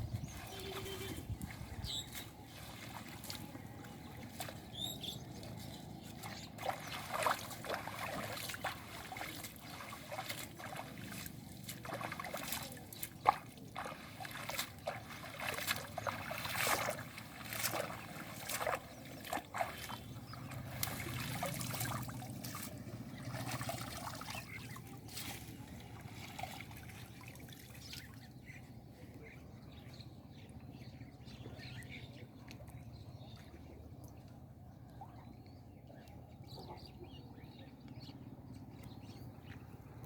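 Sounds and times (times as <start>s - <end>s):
water splashing: 0.0s - 28.2s
water trickling: 0.2s - 28.2s.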